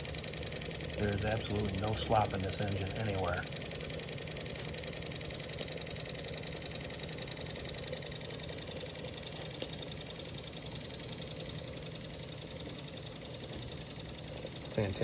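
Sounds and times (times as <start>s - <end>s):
toy steam engine running: 0.0s - 15.0s.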